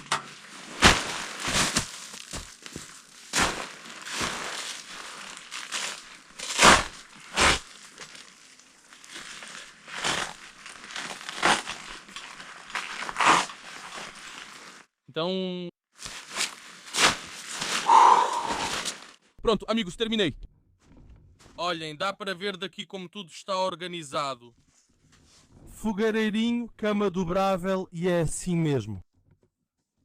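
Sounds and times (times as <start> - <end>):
fabric and plastic rustling: 0.0 - 15.0, 15.9 - 19.4, 24.5 - 25.7.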